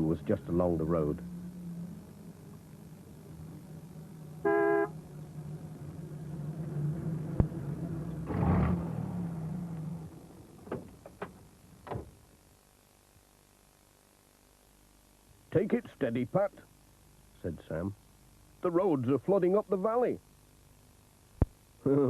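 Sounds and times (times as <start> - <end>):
van engine running: 0.0 - 12.4
van horn toot: 4.4 - 5.0.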